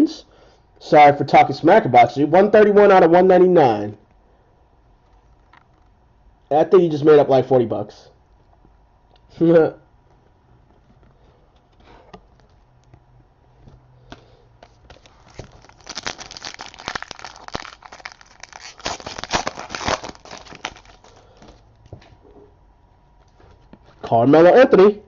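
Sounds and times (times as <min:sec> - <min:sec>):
plastic wrapping crinkling and tearing: 0:14.6 - 0:21.6.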